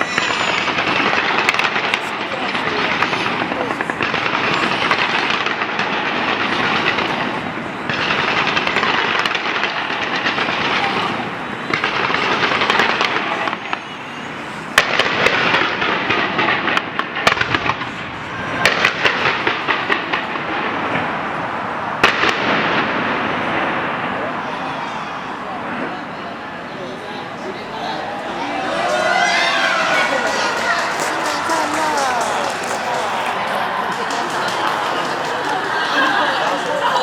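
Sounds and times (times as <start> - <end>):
fireworks crackling: 0.0 - 24.2, 28.2 - 37.0
fireworks bangs: 0.0 - 25.8, 28.2 - 37.0.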